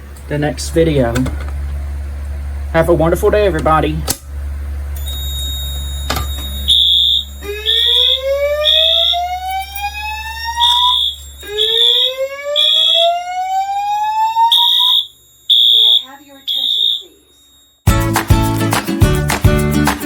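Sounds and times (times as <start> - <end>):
steady low hum: 0.0 - 17.4
short high-pitched beeps: 5.0 - 9.2
slow-whoop alarm tone: 6.7 - 17.6.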